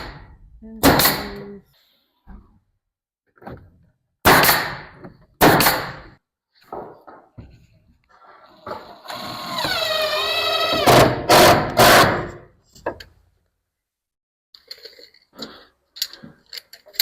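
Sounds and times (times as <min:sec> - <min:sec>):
loud sharp knocks: 0:10.8 - 0:12.4.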